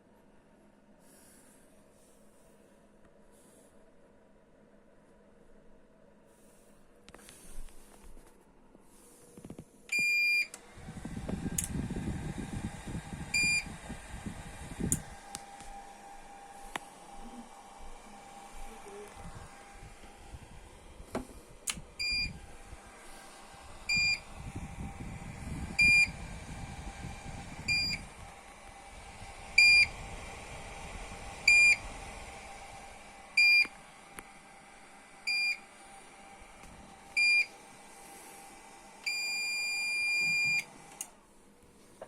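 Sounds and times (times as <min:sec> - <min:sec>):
cooling fan whine: 0:00.0 - 0:42.0.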